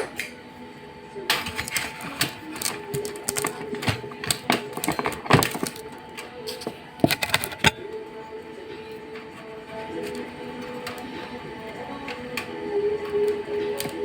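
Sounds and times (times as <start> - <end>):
steady hum: 0.0 - 14.0
sharp clicks and knocks: 1.4 - 7.8.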